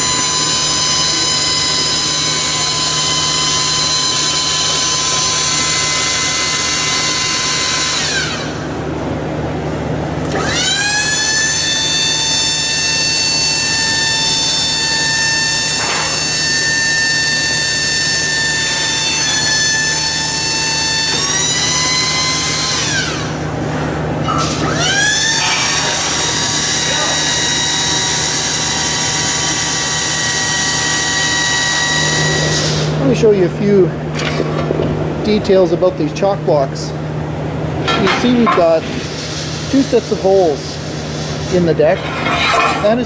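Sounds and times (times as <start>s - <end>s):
power tool high-pitched whine: 0.0s - 8.9s, 10.2s - 23.6s, 24.3s - 33.4s.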